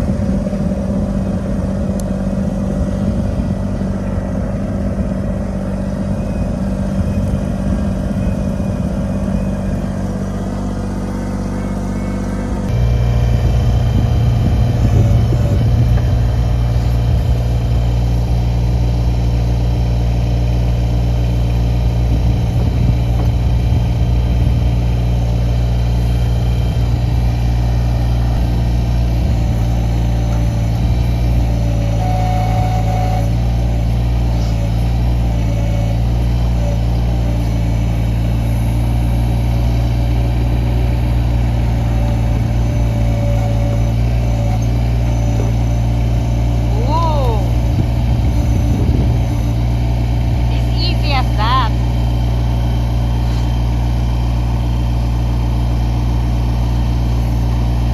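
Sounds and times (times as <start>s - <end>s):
tractor diesel engine running: 0.0s - 57.9s.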